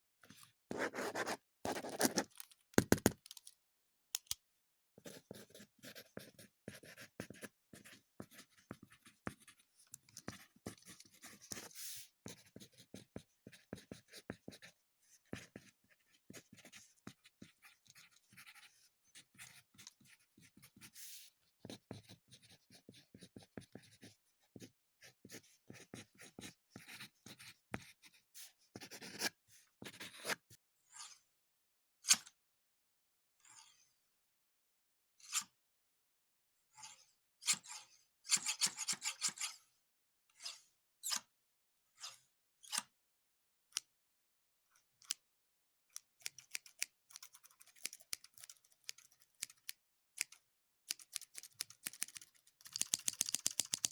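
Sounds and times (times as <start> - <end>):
pen scratching on paper: 0.7 - 3.1, 5.0 - 14.7, 15.3 - 21.0, 21.6 - 24.1, 25.2 - 27.9, 51.1 - 53.9.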